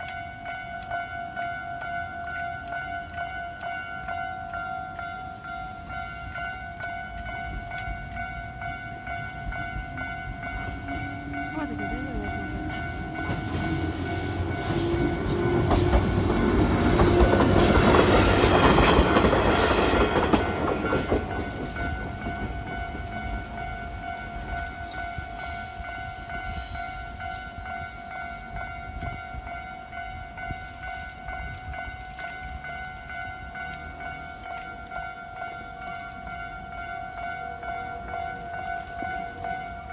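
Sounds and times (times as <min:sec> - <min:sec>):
crossing warning bell ringing: 0:00.0 - 0:39.9
train wheels clacking over rail joints: 0:06.2 - 0:25.8.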